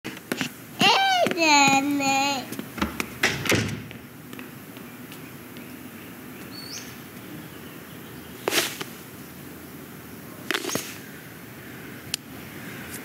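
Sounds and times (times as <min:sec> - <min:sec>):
swishing snaps: 0:08.5 - 0:09.0.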